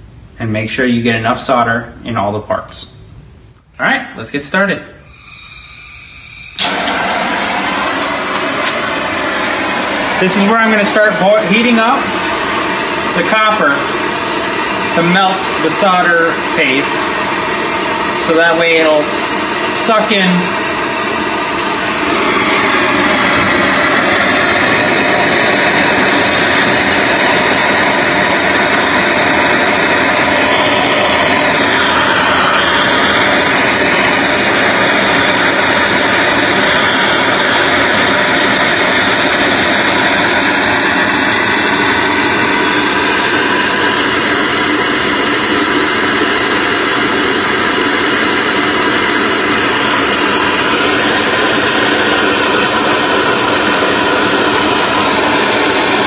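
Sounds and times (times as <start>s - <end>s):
propane torch hissing: 5.0s - 56.0s.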